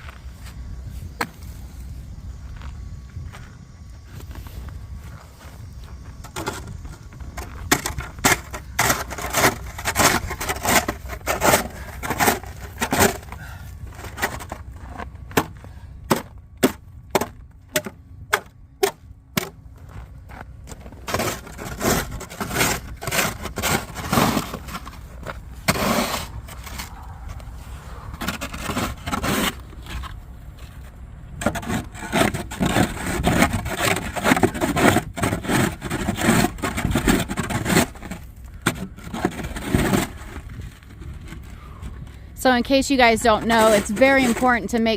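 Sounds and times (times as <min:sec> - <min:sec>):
blade scraping pavement: 0:03.5 - 0:44.9
blade chipping ice: 0:07.4 - 0:14.6, 0:20.7 - 0:25.0, 0:25.6 - 0:26.9, 0:31.4 - 0:40.7, 0:43.2 - 0:44.9
low rumble: 0:24.1 - 0:31.4.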